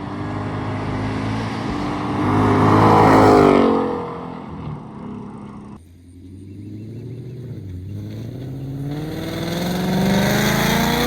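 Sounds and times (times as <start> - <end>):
car exhaust accelerating past: 0.0 - 11.0.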